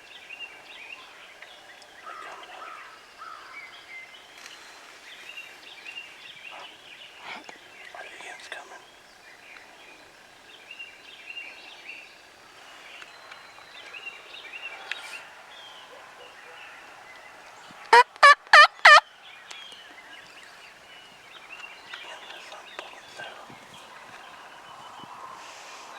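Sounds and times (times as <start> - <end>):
faint birdsong: 0.0 - 25.9
turkey yelping: 17.9 - 19.0.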